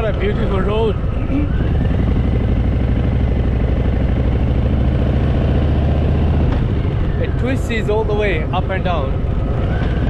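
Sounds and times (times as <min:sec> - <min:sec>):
motorcycle engine running: 0:00.9 - 0:07.4.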